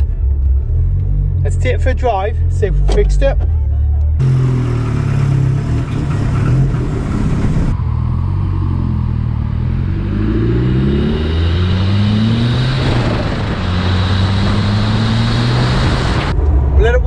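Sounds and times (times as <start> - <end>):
car engine accelerating: 4.2 - 16.8.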